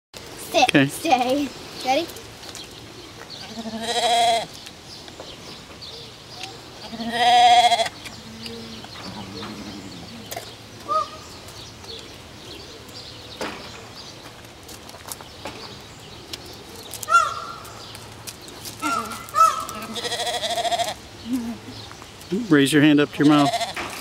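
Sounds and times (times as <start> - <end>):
deer bleating: 3.4 - 4.5, 6.8 - 7.9, 9.0 - 11.1, 18.8 - 21.0, 23.3 - 23.9.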